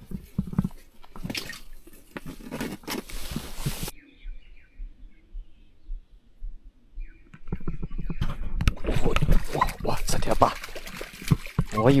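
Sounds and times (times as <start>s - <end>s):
faint bird chirps: 3.9s - 8.4s.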